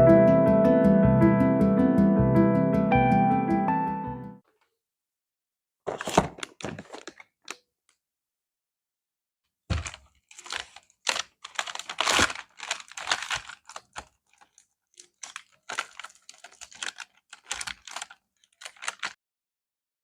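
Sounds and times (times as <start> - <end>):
packaging crinkling and rustling: 5.9 - 7.6, 9.7 - 19.2
packaging clicks: 9.7 - 19.2.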